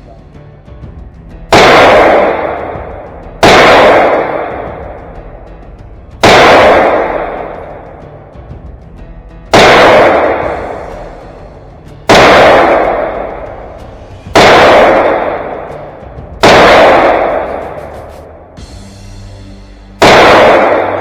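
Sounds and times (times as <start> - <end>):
carbine gunshots: 1.5 - 5.2, 6.2 - 8.0, 9.5 - 18.0, 20.0 - 21.0.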